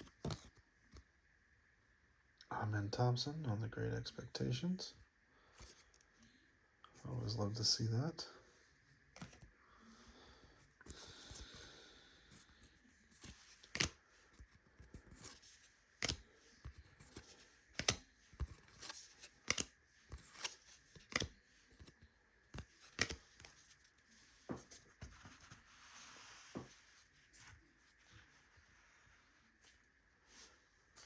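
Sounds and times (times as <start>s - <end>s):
paper rustling: 0.0s - 0.6s, 9.2s - 9.5s, 12.4s - 29.6s
cards snapping: 13.2s - 14.0s, 16.0s - 21.9s, 22.6s - 23.5s.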